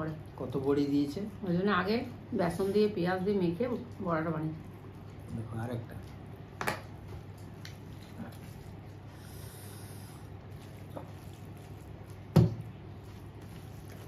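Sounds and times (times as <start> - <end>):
low room hum: 0.0 - 14.0
person eating by hand: 4.6 - 14.0.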